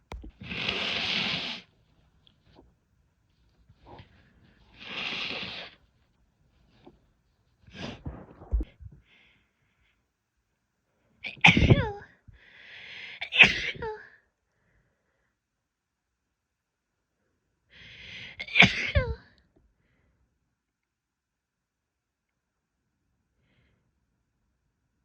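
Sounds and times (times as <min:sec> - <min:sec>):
woman sneezing: 0:11.3 - 0:12.0, 0:13.2 - 0:14.0, 0:18.4 - 0:19.2.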